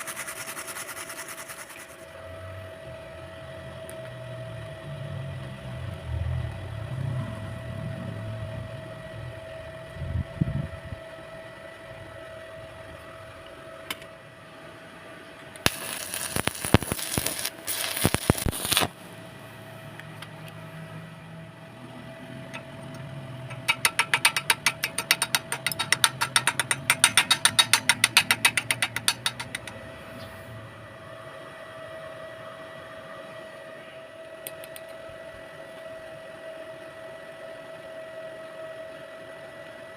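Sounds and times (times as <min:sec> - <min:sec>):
steady electrical whine: 0:00.0 - 0:39.3
welding arc crackling: 0:15.6 - 0:19.0, 0:23.5 - 0:29.8
sharp taps or clicks: 0:23.5 - 0:29.8.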